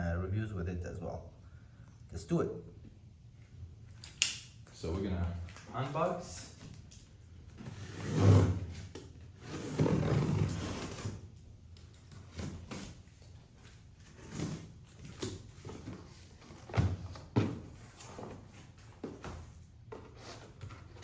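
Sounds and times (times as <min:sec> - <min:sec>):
box knocks and bumps: 0:15.6 - 0:18.4.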